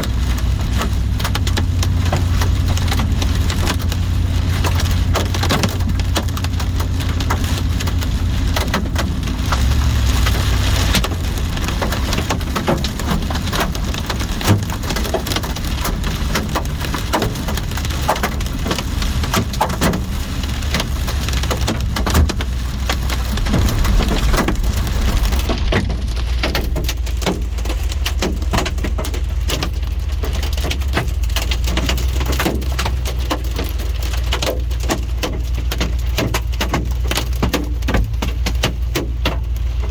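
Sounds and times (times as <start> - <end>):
low rumble: 0.0 - 34.4
hailstones pounding a vehicle: 0.0 - 39.9.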